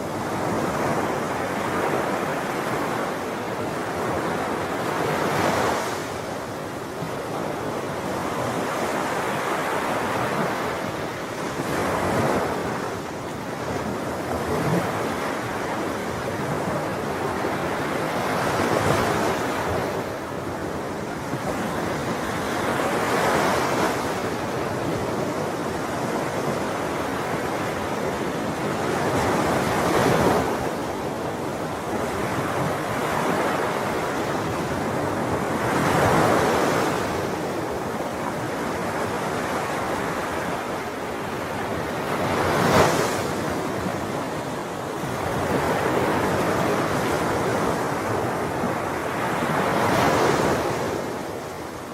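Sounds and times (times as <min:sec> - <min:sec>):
sea waves breaking on shore: 0:00.0 - 0:51.9.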